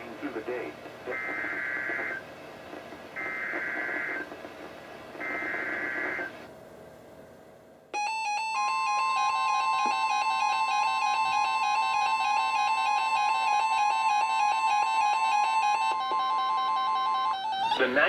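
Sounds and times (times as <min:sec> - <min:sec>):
steady high alarm tone: 0:05.2 - 0:06.4, 0:08.0 - 0:18.0
electronic alert stepping tones: 0:08.0 - 0:17.8.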